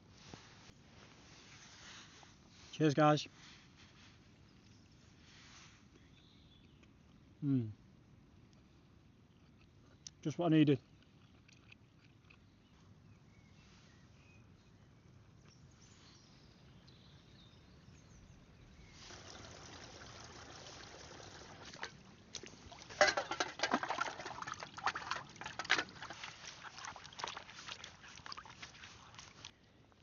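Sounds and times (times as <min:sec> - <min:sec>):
stream trickling: 0:18.8 - 0:29.5
sharp splashes and clicks: 0:20.6 - 0:29.5.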